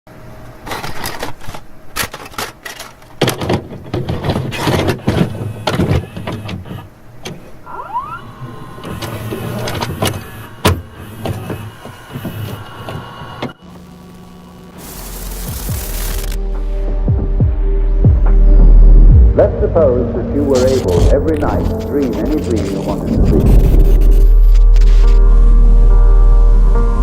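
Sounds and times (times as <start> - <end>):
mechanism clicks and clunks: 0.4 - 7.6, 8.8 - 13.6
small motorised mechanism whirring: 4.5 - 16.4.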